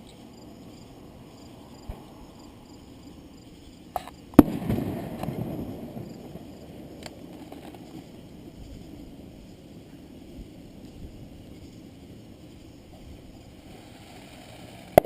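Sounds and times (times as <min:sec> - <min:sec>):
small firework pop: 0:04.0 - 0:05.7, 0:14.0 - 0:15.0
firework bang: 0:04.4 - 0:08.1.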